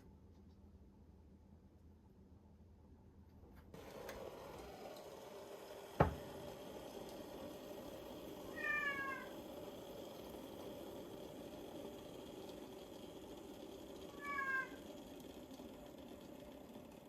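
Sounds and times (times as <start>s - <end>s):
faint room hum: 0.0s - 17.0s
cat meowing: 8.5s - 9.3s, 14.1s - 14.8s.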